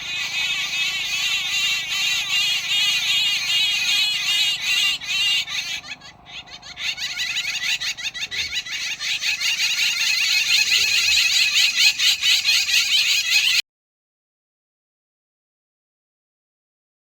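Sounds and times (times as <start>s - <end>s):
birds chirping: 0.0s - 13.6s.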